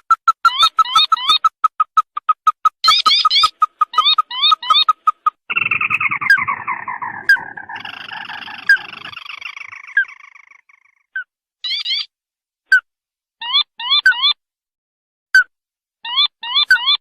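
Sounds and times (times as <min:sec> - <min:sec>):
chattering bird trill: 0:00.0 - 0:12.1, 0:16.1 - 0:17.0
sharp bird chirps: 0:00.0 - 0:12.1.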